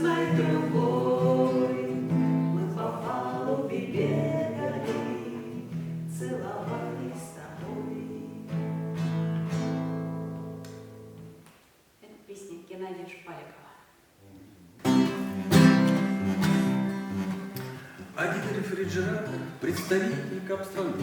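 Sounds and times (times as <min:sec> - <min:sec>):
two people singing: 0:00.0 - 0:08.8
acoustic guitar: 0:00.0 - 0:11.6, 0:14.2 - 0:21.0.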